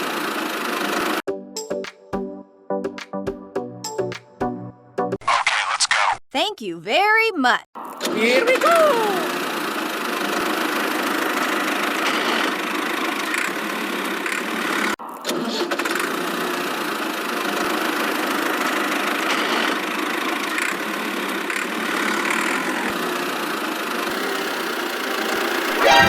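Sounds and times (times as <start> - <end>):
small motor running: 9.2 - 13.5, 21.5 - 26.0.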